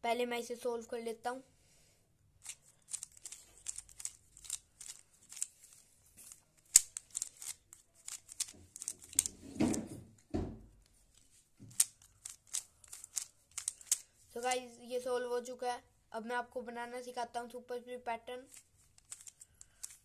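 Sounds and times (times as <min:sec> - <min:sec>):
puzzle cube plastic clicks: 0:02.4 - 0:09.9, 0:10.8 - 0:14.6, 0:18.5 - 0:20.0.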